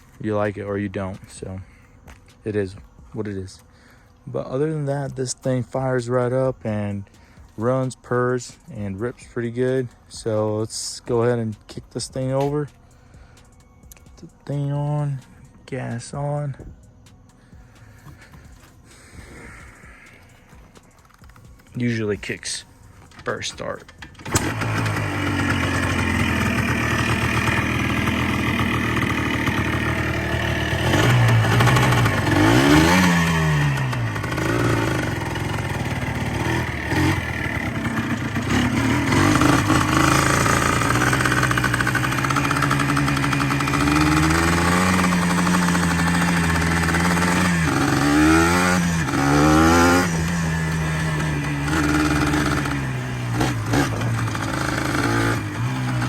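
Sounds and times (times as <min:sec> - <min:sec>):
motorcycle engine idling and revving: 0:00.0 - 0:56.0
motorcycle engine kick start: 0:23.0 - 0:56.0.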